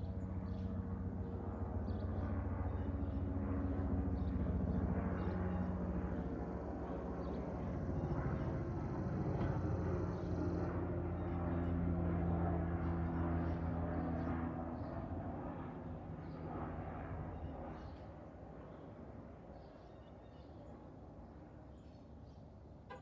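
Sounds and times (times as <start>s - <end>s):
helicopter flying past: 0.0s - 21.8s.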